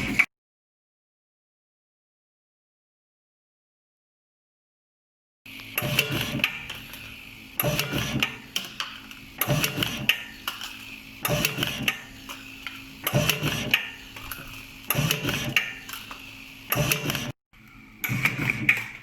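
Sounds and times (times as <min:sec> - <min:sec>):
cutting machine clicks and clatter: 0:05.5 - 0:17.4, 0:18.0 - 0:19.0.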